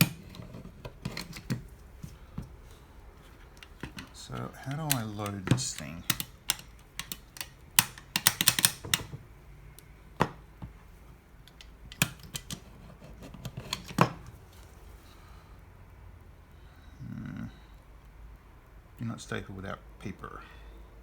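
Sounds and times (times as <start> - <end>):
stapler clicks: 3.6 - 9.2.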